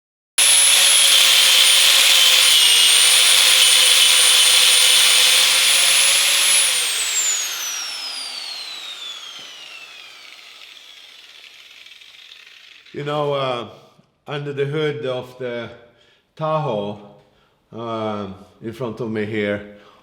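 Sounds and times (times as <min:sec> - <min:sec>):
electric grinder whining: 0:00.4 - 0:13.0.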